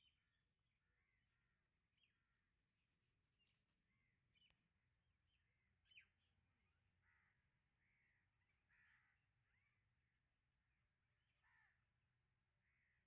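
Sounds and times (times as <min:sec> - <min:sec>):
faint bird calls: 0:05.3 - 0:09.9, 0:11.3 - 0:11.9, 0:12.6 - 0:13.0.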